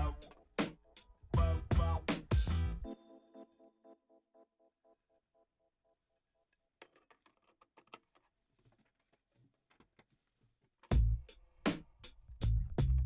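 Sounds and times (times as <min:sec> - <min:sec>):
music with heavy bass beat: 0:00.0 - 0:02.8, 0:10.9 - 0:11.8, 0:12.4 - 0:13.0.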